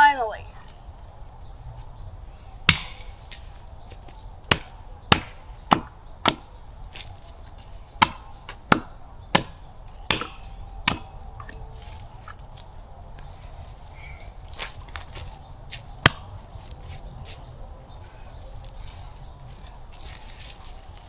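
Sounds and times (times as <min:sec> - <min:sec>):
tool striking wood: 0:02.7 - 0:03.1, 0:04.5 - 0:06.5, 0:08.0 - 0:11.6.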